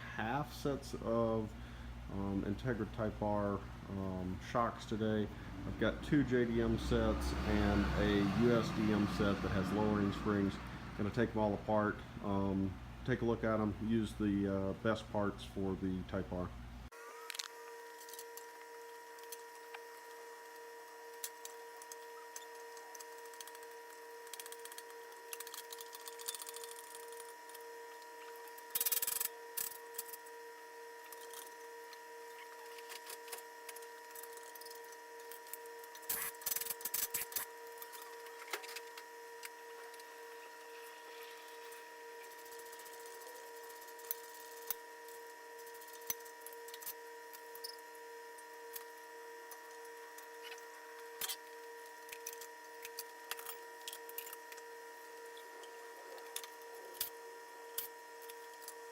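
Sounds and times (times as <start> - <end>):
faint hum: 0.0 - 58.9
hand tools and metal parts clicking: 21.2 - 27.6, 28.2 - 30.3, 32.4 - 40.1, 49.5 - 54.6.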